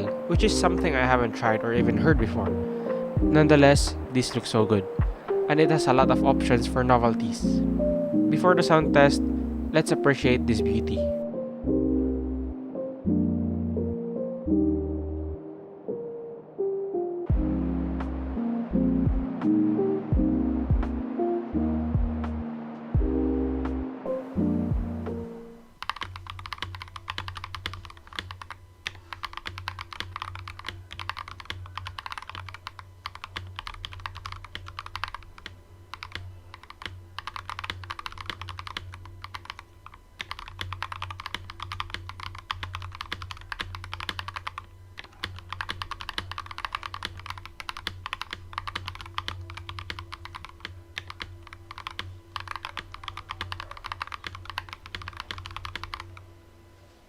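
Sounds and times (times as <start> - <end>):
steady low hum: 0.0 - 15.4, 17.3 - 57.0
keyboard keystroke clacks: 25.8 - 56.2.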